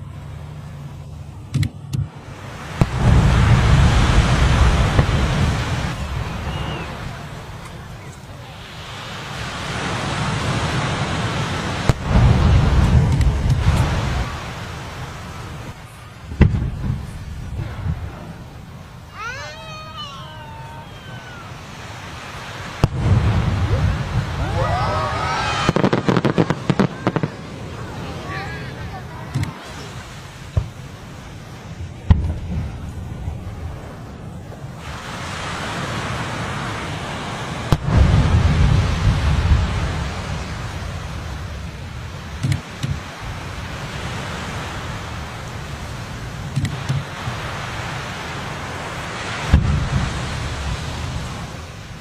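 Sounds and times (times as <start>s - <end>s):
steady noisy hiss: 0.0s - 52.0s
rumbling boom: 1.3s - 7.6s, 10.5s - 14.5s, 16.3s - 19.0s, 22.8s - 29.1s, 31.4s - 34.8s, 37.7s - 42.2s
firework crackles: 2.1s - 19.3s, 20.4s - 52.0s
firework bang: 2.7s - 6.8s, 11.8s - 14.3s, 16.3s - 18.3s, 22.7s - 27.5s, 32.0s - 32.8s, 37.7s - 40.6s, 49.4s - 50.3s
voices exclaiming: 5.8s - 8.7s, 19.1s - 22.3s, 23.5s - 30.1s
small firework pops: 12.8s - 13.9s, 25.6s - 27.4s, 32.1s - 32.4s, 42.4s - 43.0s, 46.5s - 47.1s.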